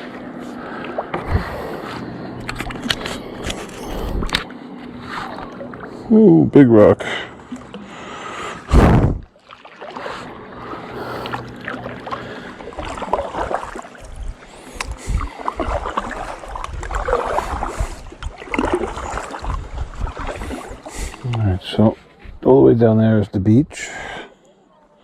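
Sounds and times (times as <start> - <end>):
paddle swishing through water: 0.0 - 6.1, 7.2 - 22.4
loud thump: 8.7 - 9.2.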